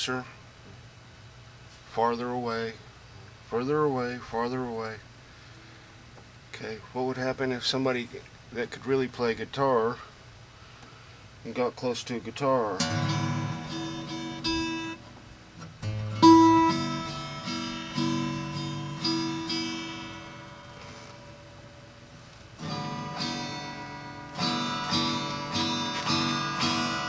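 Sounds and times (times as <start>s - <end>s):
acoustic guitar strumming: 12.8s - 27.0s.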